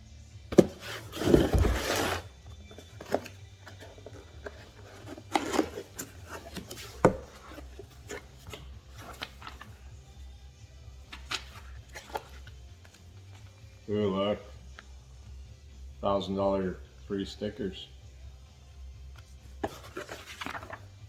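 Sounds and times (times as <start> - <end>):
cardboard box rustling scrape: 0.5 - 9.8, 19.6 - 20.8.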